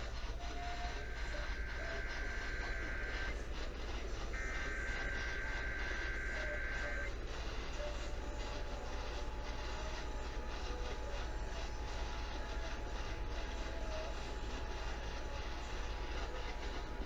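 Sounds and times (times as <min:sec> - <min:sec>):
radio static: 0:01.0 - 0:07.2.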